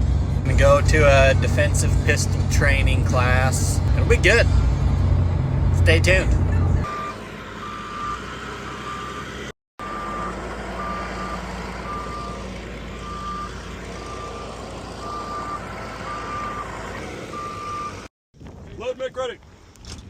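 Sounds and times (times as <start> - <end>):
low engine rumble: 0.0 - 19.8
reversing alarm beeping: 6.8 - 18.1.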